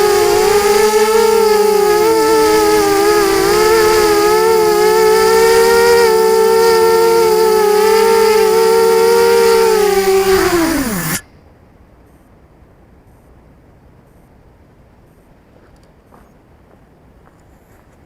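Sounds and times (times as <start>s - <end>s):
drone motors whining: 0.0s - 11.2s.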